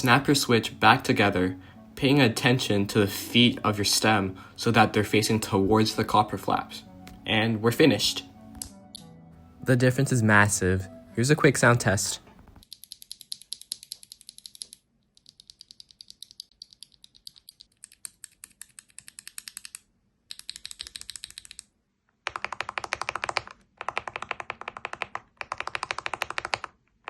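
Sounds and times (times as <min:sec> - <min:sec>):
fast typing on mechanical keyboard: 0:12.6 - 0:21.6, 0:22.2 - 0:26.8.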